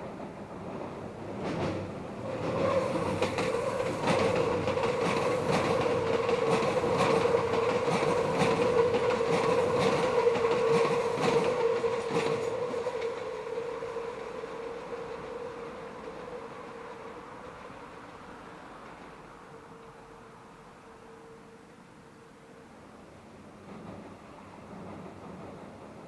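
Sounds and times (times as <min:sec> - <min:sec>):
train wheels clacking over rail joints: 0:01.3 - 0:13.2
train wheels squealing: 0:01.6 - 0:21.5.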